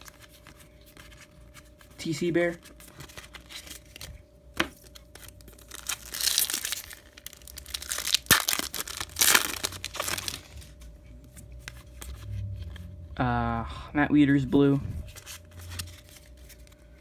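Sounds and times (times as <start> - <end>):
foil wrapper crinkling and tearing: 4.8 - 10.8.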